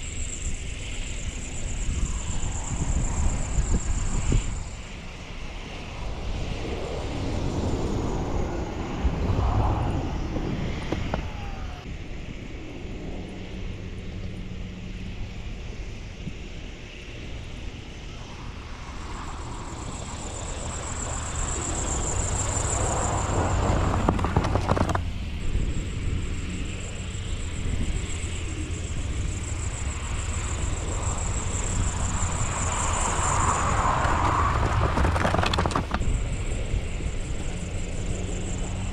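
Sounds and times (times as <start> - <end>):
vehicle engine rumbling: 18.2 - 38.9.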